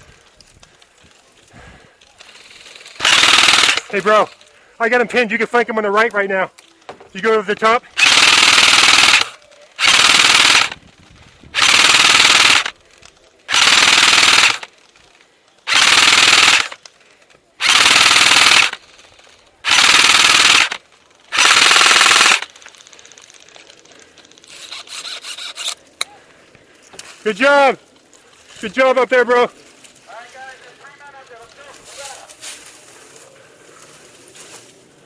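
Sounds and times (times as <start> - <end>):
airsoft gun firing bursts: 2.3 - 4.2, 8.0 - 10.8, 11.5 - 12.8, 13.5 - 14.8, 15.6 - 16.8, 17.6 - 19.0, 19.6 - 22.6.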